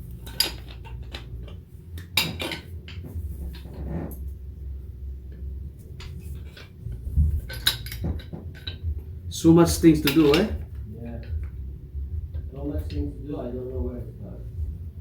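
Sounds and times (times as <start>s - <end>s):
hard objects clinking and knocking: 0.0s - 4.4s, 5.3s - 11.6s
steady low hum: 0.0s - 15.0s.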